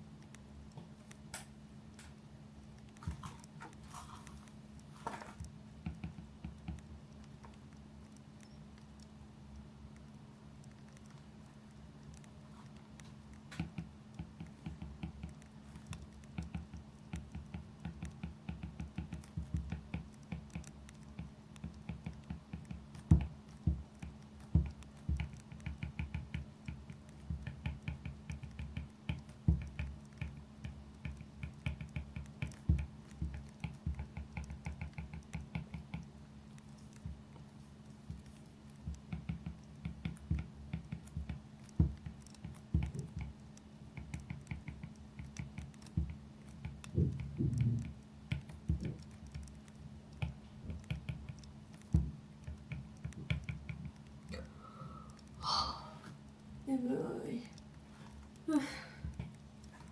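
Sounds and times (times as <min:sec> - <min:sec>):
faint low hum: 0:00.0 - 0:59.9.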